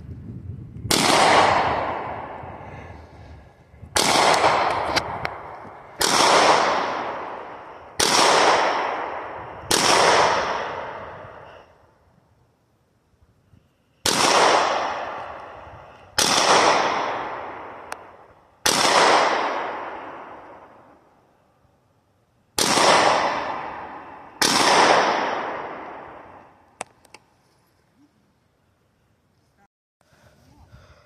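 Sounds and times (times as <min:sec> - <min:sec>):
pistol shots echoing: 0:00.9 - 0:02.4, 0:04.0 - 0:11.4, 0:14.0 - 0:15.6, 0:16.2 - 0:20.9, 0:22.6 - 0:26.6.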